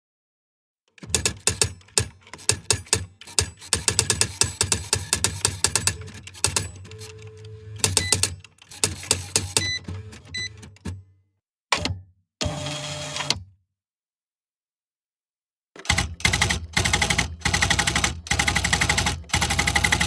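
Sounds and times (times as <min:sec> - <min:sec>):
typewriter keystroke clacks: 0:01.0 - 0:06.8, 0:07.8 - 0:09.8, 0:15.9 - 0:20.0
typewriter motor hum: 0:15.9 - 0:20.0.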